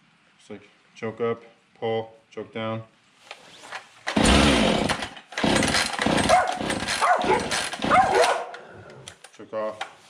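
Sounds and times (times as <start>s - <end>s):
starter cord pulled: 4.1s - 8.4s
chainsaw engine firing roughly: 4.1s - 8.5s.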